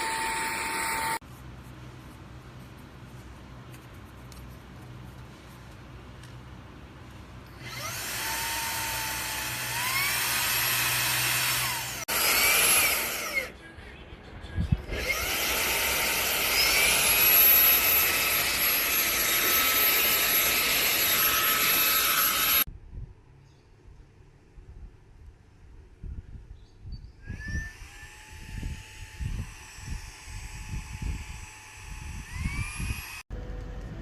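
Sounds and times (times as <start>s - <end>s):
handheld vacuum motor whining: 0.0s - 1.2s, 7.6s - 13.5s, 14.9s - 22.7s, 27.3s - 33.2s.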